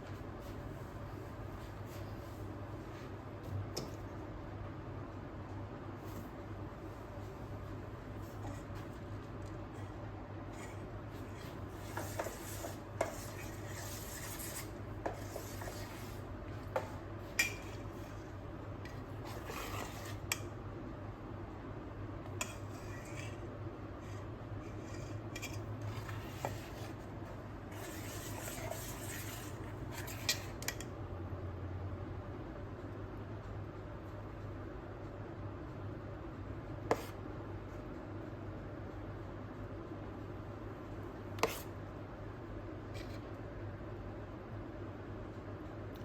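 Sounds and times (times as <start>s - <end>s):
steady low hum: 0.0s - 46.0s
utensil scraping against cookware: 9.7s - 18.3s, 18.9s - 20.5s, 22.4s - 23.4s, 24.1s - 27.1s, 27.7s - 30.9s, 41.4s - 41.7s.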